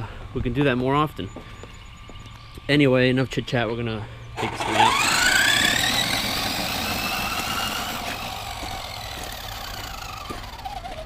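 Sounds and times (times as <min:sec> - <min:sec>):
electric toy truck motor whining: 0:04.4 - 0:11.0.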